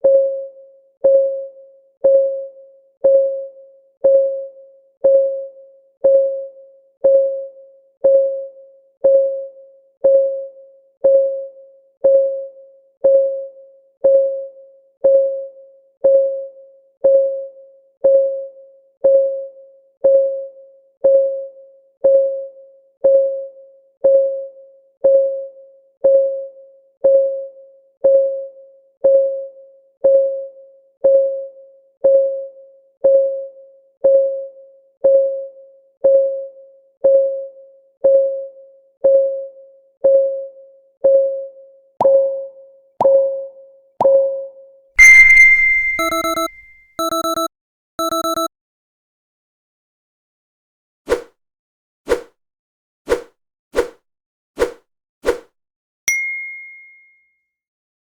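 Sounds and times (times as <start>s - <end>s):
clock tick sound effect: 45.0s - 48.5s.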